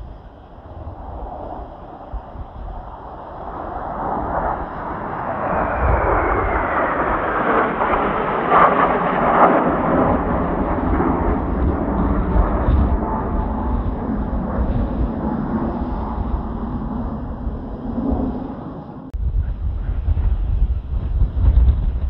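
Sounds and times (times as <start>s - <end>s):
jet whine falling in pitch: 0.0s - 20.9s
jet aircraft roar: 0.0s - 22.0s
wind buffeting microphone: 0.0s - 22.0s.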